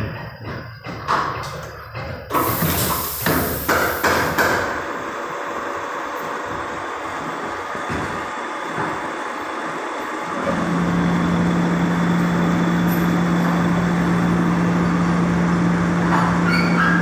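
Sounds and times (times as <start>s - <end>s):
faint high squeaks: 16.2s - 17.0s.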